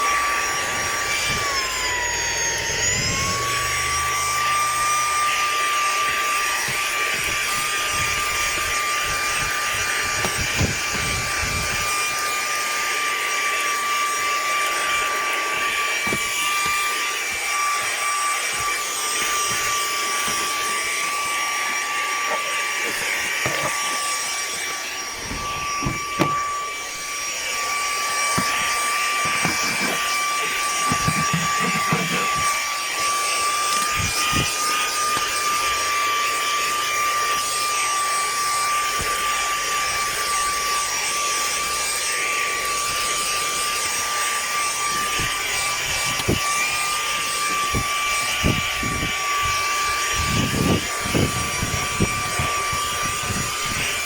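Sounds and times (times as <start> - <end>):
handheld vacuum running: 0.0 - 54.0.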